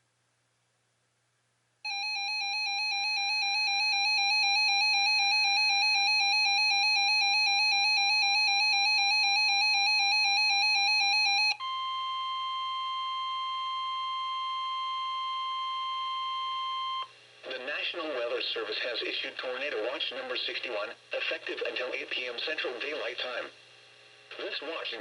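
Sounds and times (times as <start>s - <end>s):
steady high warning tone: 1.9s - 17.6s.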